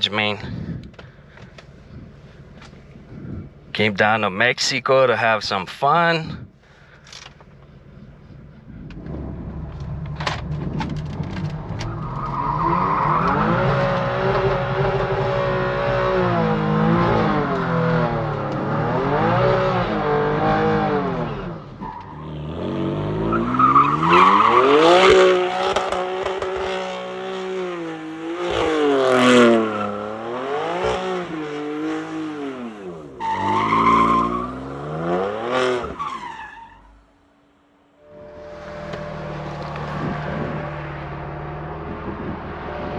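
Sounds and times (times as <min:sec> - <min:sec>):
tires squealing: 0:07.6 - 0:37.2, 0:38.0 - 0:42.9
car engine revving hard: 0:09.0 - 0:36.4, 0:38.8 - 0:42.9.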